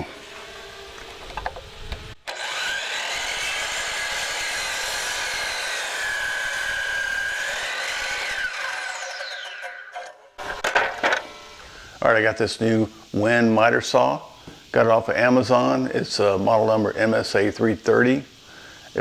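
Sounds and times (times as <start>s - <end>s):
miter saw cutting wood: 0.0s - 11.8s.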